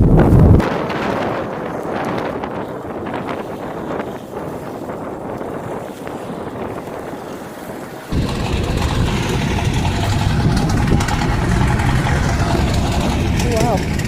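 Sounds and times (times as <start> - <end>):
wind noise on microphone: 0.0 - 14.0
loud low rumble: 8.1 - 14.0.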